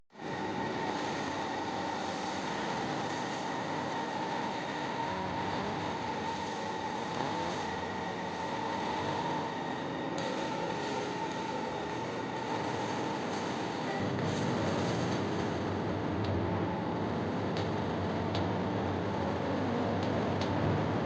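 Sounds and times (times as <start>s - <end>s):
constant high whine: 0.1s - 21.0s
arc welding hiss: 0.2s - 15.9s.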